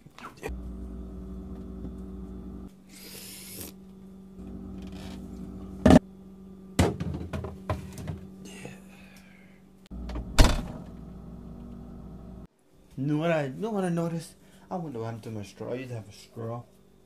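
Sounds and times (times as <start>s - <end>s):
refrigerator humming: 0.4s - 12.5s.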